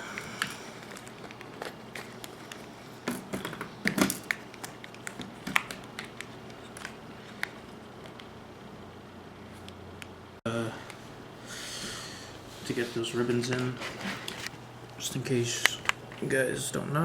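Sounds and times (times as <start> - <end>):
hands clicking and tapping parts: 0.4 - 8.3.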